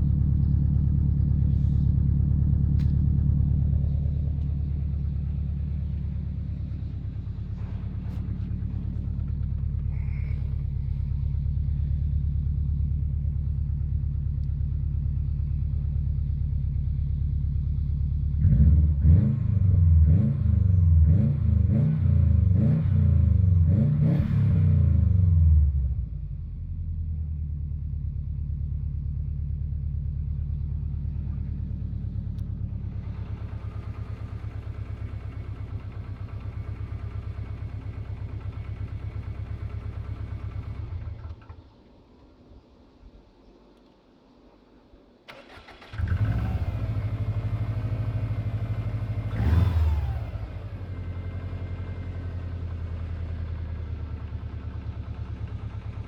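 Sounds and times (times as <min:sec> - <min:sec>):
engine knock: 0:00.0 - 0:18.2, 0:30.5 - 0:41.8, 0:51.0 - 0:56.0
car engine idling and revving: 0:00.0 - 0:56.0.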